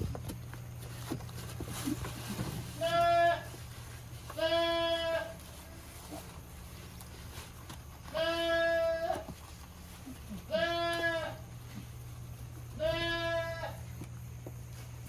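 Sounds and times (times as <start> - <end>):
steady low hum: 0.0 - 15.0
goat bleating: 2.8 - 3.6, 4.3 - 6.2, 8.1 - 9.4, 10.0 - 11.5, 12.7 - 13.9.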